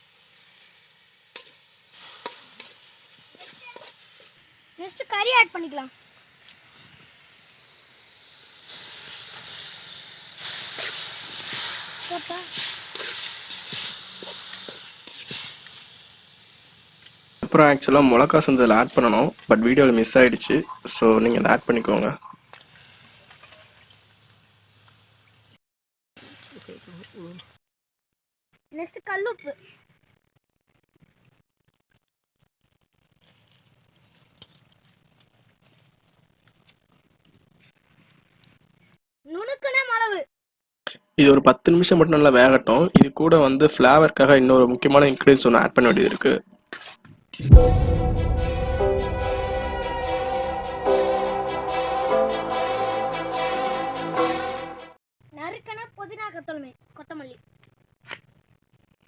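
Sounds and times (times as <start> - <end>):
chicken sizzling in a pan: 0.0 - 25.5
utensil scraping cooking pan: 1.3 - 4.4, 10.4 - 15.9.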